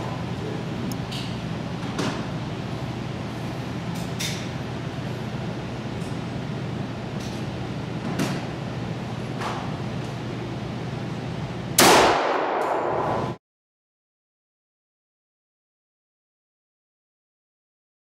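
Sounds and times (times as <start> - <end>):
pistol shot ringing: 11.8 - 13.3.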